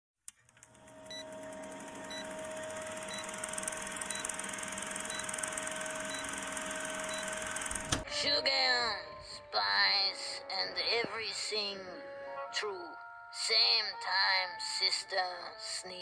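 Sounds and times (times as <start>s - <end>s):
short high beeps: 6.1s - 6.3s.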